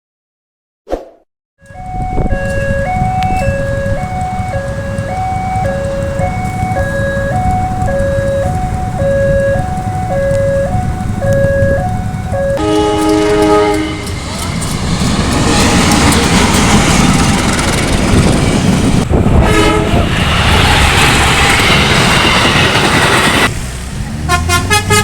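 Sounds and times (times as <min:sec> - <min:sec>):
level crossing alarm tones: 0:01.6 - 0:13.9
rumble of road traffic: 0:01.6 - 0:25.0
horn chord: 0:08.1 - 0:14.2, 0:24.3 - 0:25.0.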